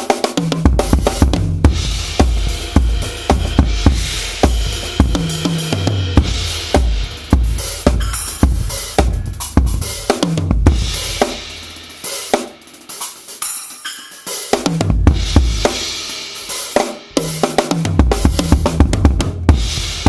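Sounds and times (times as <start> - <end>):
cymbal hits: 1.8 - 9.0.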